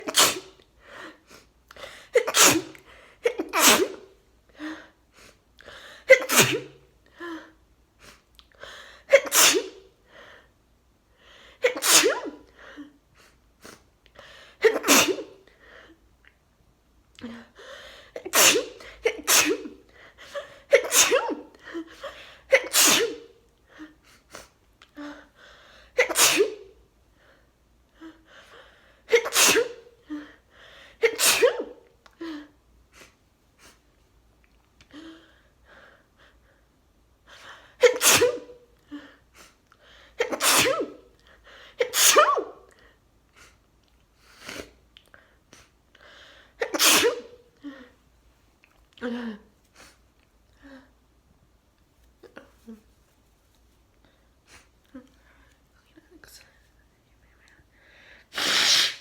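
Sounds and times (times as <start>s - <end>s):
person sneezing: 0.0s - 0.6s, 2.0s - 4.1s, 6.0s - 6.8s, 9.1s - 9.9s, 11.6s - 12.5s, 14.6s - 15.4s, 18.2s - 23.4s, 26.0s - 26.7s, 29.1s - 29.9s, 31.0s - 31.9s, 37.8s - 38.6s, 40.2s - 41.1s, 41.8s - 42.8s, 46.6s - 47.5s, 58.3s - 59.0s
quiet breaths: 17.2s - 18.2s, 52.2s - 58.3s.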